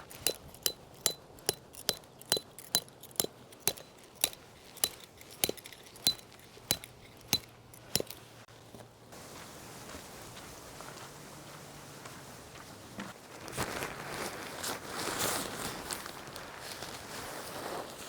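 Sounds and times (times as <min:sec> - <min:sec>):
hammer striking metal tent stake: 0:00.0 - 0:08.3.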